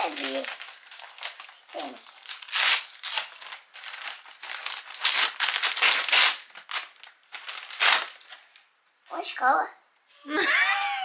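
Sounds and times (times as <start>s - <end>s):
crinkly wrapper rustling: 0.0s - 8.7s.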